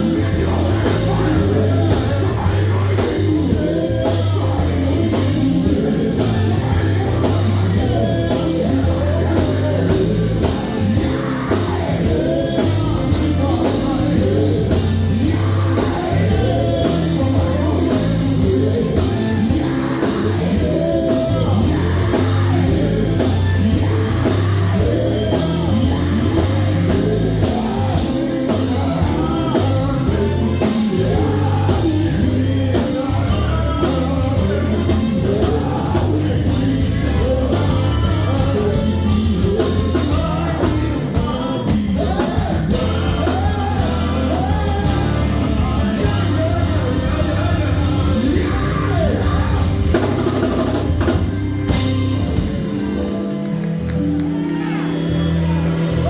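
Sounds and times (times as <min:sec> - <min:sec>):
steady drum beat: 0:00.0 - 0:52.9
heavy bass line: 0:00.0 - 0:53.2
amplified band: 0:00.0 - 0:56.0
gospel group singing: 0:00.0 - 0:56.0.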